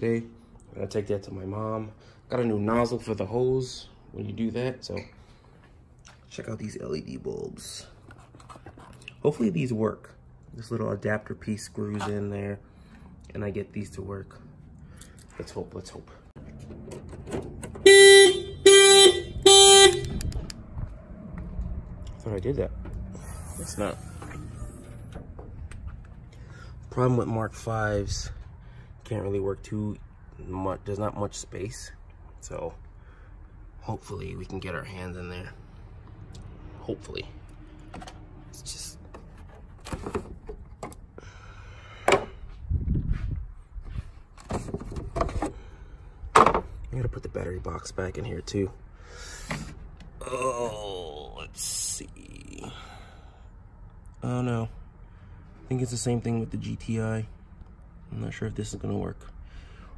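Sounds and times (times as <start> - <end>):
car horn honks: 17.6 - 20.5
car parts knocking: 46.3 - 46.8.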